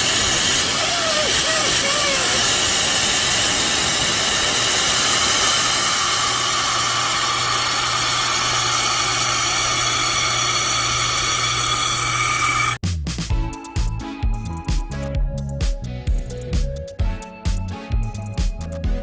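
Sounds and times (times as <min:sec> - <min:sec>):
rushing gas hiss: 0:00.0 - 0:12.8.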